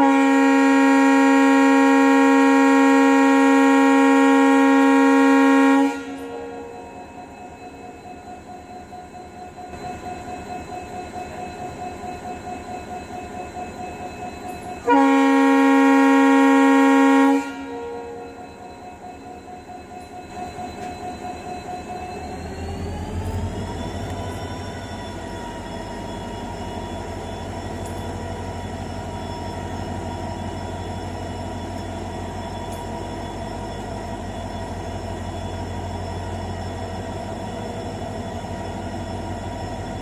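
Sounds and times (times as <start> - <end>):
locomotive horn blast: 0.0 - 6.8, 14.8 - 18.4
pulsing locomotive engine: 0.0 - 40.0.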